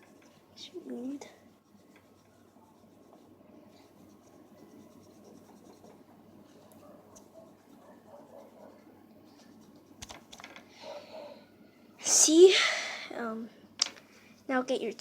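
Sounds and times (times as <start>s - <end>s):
paper rubbing on metal: 0.0s - 10.0s.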